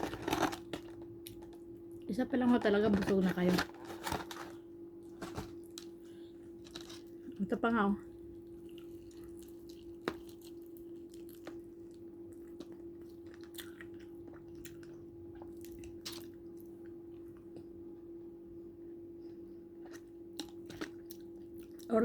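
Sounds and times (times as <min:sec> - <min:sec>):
person chewing fried chicken: 0:08.2 - 0:17.8, 0:19.3 - 0:21.9.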